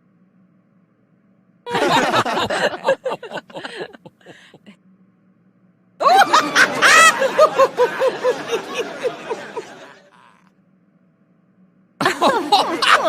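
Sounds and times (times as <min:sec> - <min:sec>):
person laughing: 0:01.7 - 0:04.7, 0:06.0 - 0:10.4, 0:12.0 - 0:13.0
squealing laugh: 0:01.7 - 0:04.7, 0:06.0 - 0:10.4, 0:12.0 - 0:13.0.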